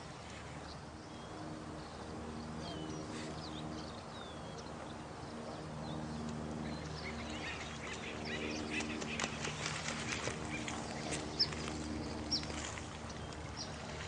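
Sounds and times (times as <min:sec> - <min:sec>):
low steady hum: 0:00.0 - 0:14.0
running water: 0:07.1 - 0:14.0.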